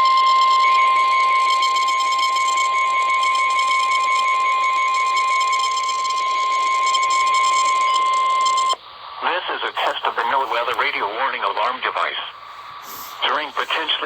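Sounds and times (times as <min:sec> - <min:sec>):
high-pitched warning tone: 0:00.0 - 0:08.8
radio hiss: 0:08.8 - 0:14.0.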